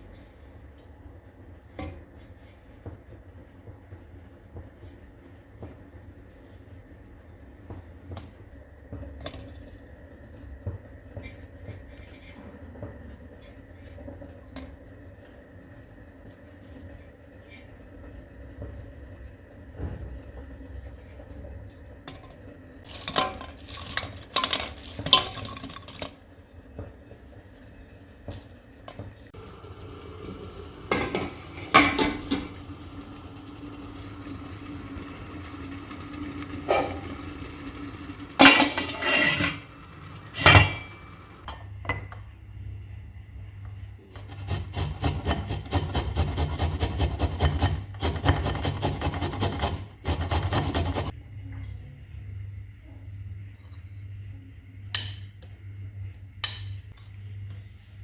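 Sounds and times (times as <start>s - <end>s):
utensils and dishes clinking: 22.9s - 26.2s, 29.4s - 34.7s, 35.4s - 41.6s
fast even scraping: 30.9s - 41.4s, 44.2s - 51.1s.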